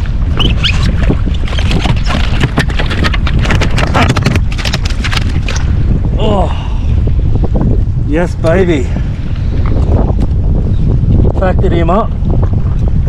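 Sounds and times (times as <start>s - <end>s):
water slapping against hull: 0.0s - 6.0s
wind buffeting microphone: 0.0s - 13.0s.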